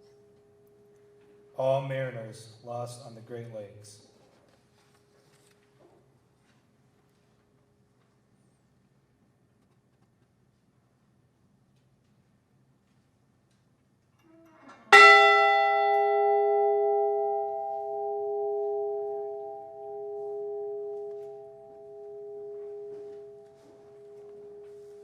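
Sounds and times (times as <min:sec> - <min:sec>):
ship's bell ringing: 0:14.9 - 0:25.0.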